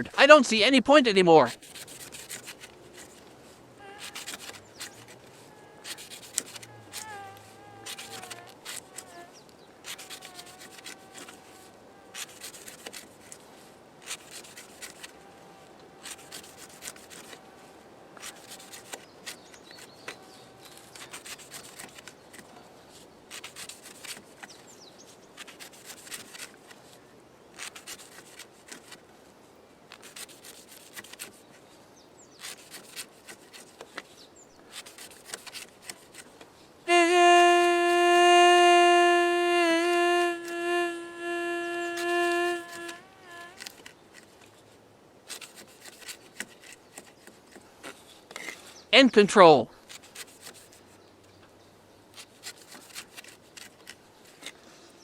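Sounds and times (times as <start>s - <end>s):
knife cutting rope: 1.5s - 3.2s, 3.8s - 11.4s, 12.1s - 13.4s, 14.0s - 15.2s, 16.0s - 17.4s, 27.6s - 29.0s, 29.9s - 31.4s, 32.4s - 34.0s, 34.7s - 36.3s, 36.9s - 44.3s, 52.1s - 54.6s.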